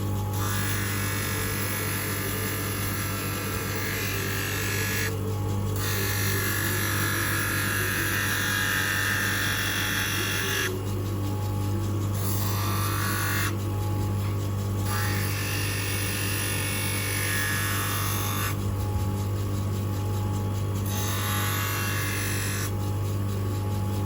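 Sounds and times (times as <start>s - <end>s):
motor humming: 0.0s - 24.0s.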